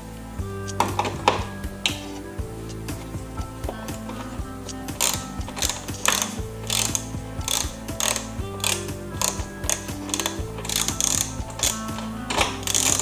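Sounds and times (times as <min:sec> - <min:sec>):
background music: 0:00.0 - 0:13.0
ratchet wrench clicking: 0:05.0 - 0:13.0.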